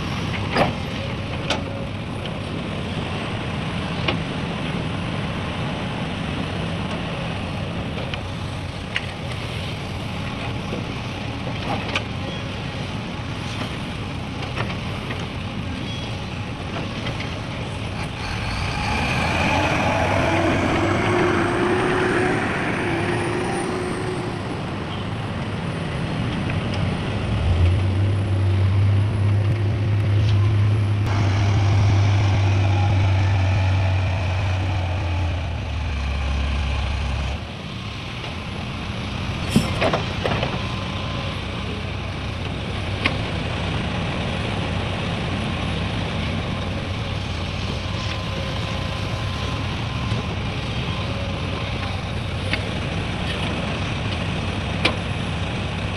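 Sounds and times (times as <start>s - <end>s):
diesel trucks and machinery running: 0.0s - 55.9s
deep engine drone: 17.0s - 44.3s.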